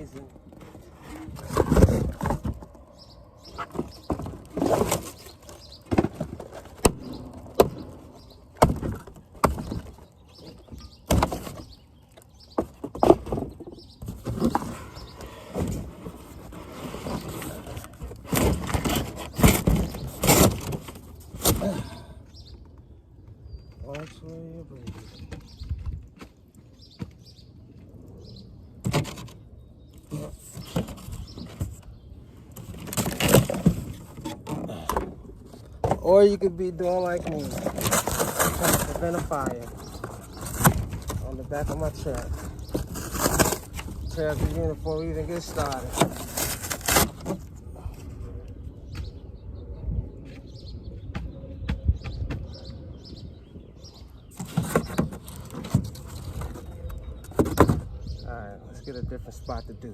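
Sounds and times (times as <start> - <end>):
knocks and scrapes of handling: 0.0 - 21.6, 30.1 - 48.2, 54.3 - 57.9
birds chirping: 0.0 - 59.9.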